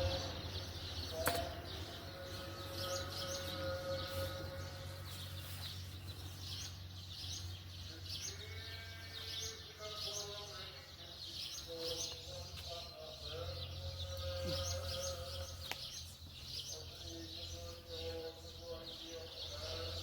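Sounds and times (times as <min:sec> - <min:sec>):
distant animals bleating: 0:00.0 - 0:05.3, 0:07.4 - 0:12.0, 0:13.2 - 0:15.9
bird chirping: 0:00.0 - 0:20.0
steady low hum: 0:00.0 - 0:20.0.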